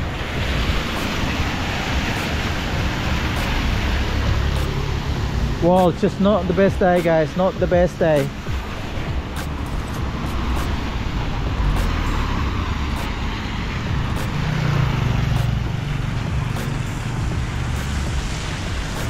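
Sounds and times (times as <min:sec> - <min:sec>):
street traffic: 0:00.0 - 0:19.0
vehicle engine passing close: 0:09.2 - 0:19.0.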